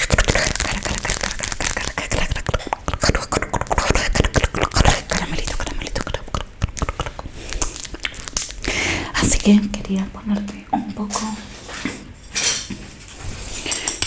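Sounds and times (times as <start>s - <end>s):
wet mouth clicks and pops: 0.0s - 8.8s.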